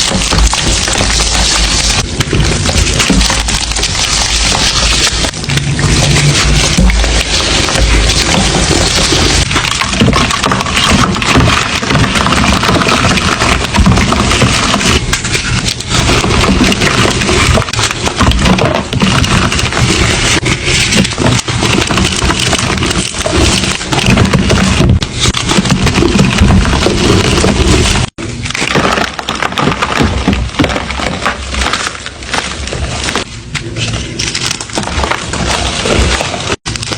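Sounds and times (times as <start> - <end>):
chalk crunching: 0.0 - 28.8.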